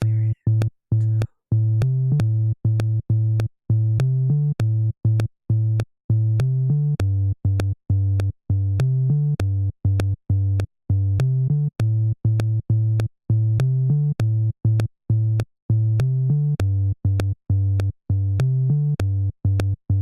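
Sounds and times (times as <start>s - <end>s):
synthesizer bass line: 0.0s - 1.3s.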